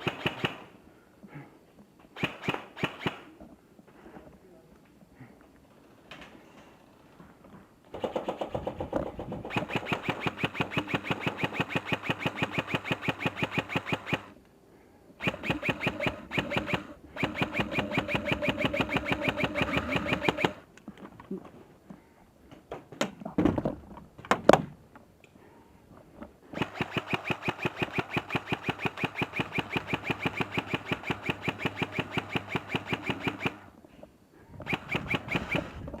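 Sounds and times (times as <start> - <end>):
airsoft rifle full-auto bursts: 7.9 - 14.4, 15.2 - 20.7, 26.5 - 33.7, 34.6 - 35.8.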